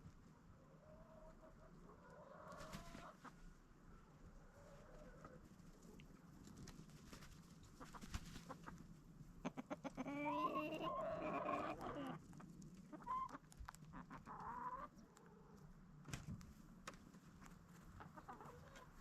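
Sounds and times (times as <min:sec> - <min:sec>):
chickens calling: 0:00.8 - 0:03.4, 0:07.6 - 0:08.8, 0:09.4 - 0:15.6, 0:18.0 - 0:19.0.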